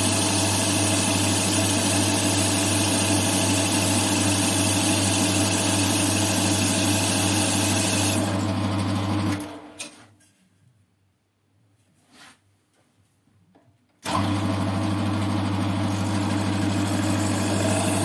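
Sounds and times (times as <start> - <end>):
metal lathe humming: 0.0 - 9.3, 14.1 - 18.0.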